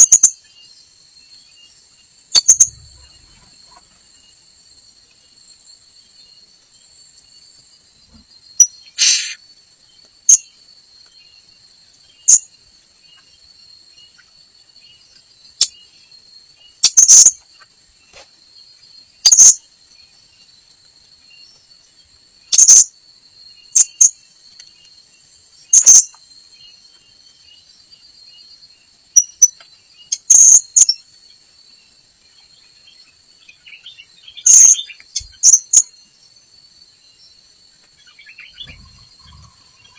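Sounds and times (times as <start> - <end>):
insect drone: 0.0 - 39.9
parrot calls: 9.0 - 9.4.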